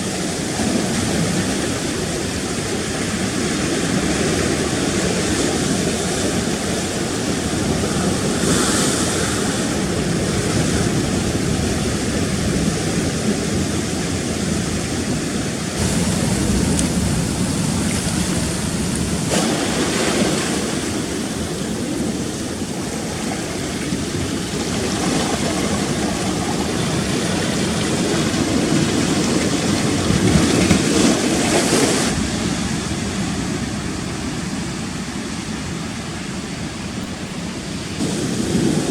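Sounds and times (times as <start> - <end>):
sea surf breaking over rocks: 0.0 - 38.9
wind buffeting microphone: 0.0 - 38.9.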